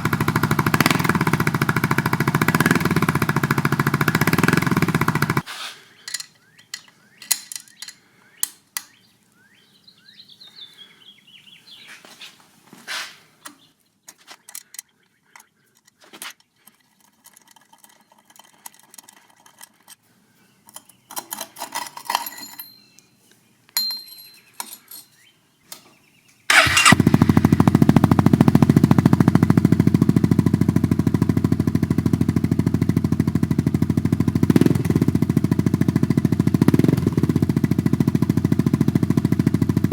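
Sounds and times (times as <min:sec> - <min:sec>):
scooter engine running: 0:00.0 - 0:05.5, 0:26.5 - 0:39.9.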